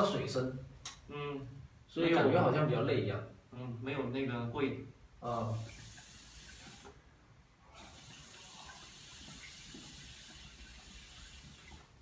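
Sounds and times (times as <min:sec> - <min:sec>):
hookah airy hiss: 0:05.2 - 0:12.0.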